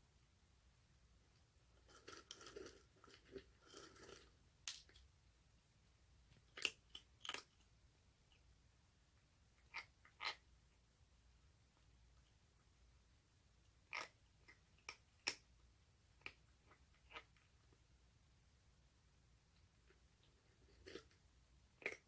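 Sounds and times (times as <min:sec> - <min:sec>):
kitten chewing: 0:01.8 - 0:04.4, 0:06.3 - 0:07.7, 0:19.8 - 0:22.0.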